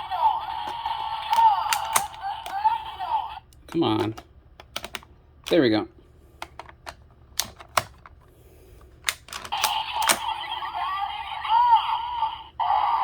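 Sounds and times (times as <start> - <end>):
toy electronic sound effects: 0.0 - 3.4, 9.4 - 13.0
plastic toy button clicks: 0.7 - 2.6, 3.6 - 5.6, 6.4 - 8.1, 9.0 - 10.3.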